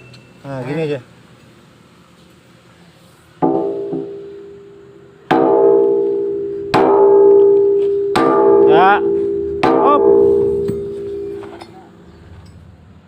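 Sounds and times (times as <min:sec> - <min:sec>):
hammer striking steel: 0:03.4 - 0:12.6
long metallic ring: 0:03.4 - 0:12.8.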